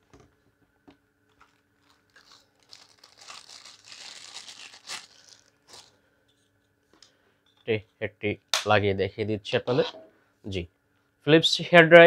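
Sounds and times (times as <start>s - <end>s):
plastic packaging crinkling: 1.3s - 6.0s.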